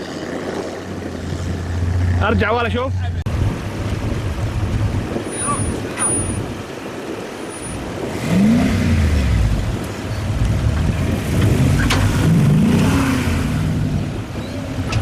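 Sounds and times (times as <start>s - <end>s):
vehicle engine revving: 7.6s - 15.0s.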